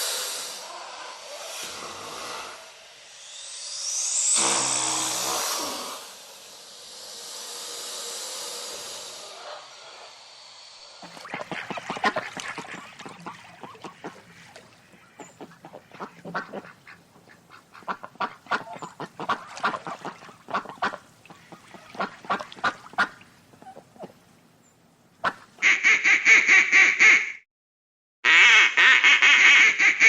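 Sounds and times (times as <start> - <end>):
waterfowl calling: 11.0 - 24.2, 25.2 - 27.2.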